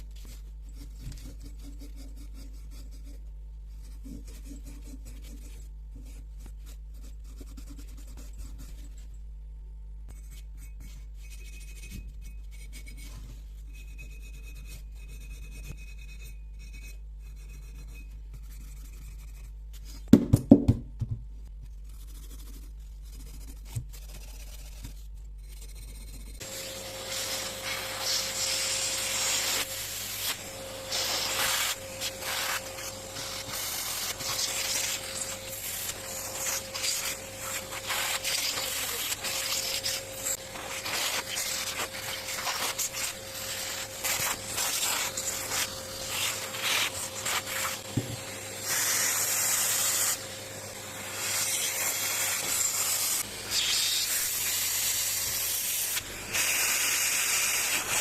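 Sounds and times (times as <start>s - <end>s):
constant humming tone: 0.0s - 56.4s
hand rubbing on metal parts: 24.4s - 47.9s
steady hiss: 26.4s - 47.8s.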